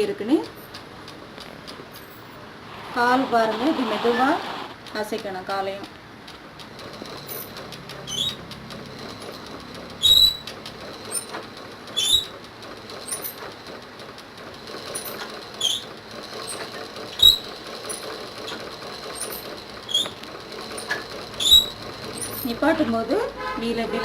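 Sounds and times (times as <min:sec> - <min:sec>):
treadle sewing machine clacking: 0:06.4 - 0:23.8.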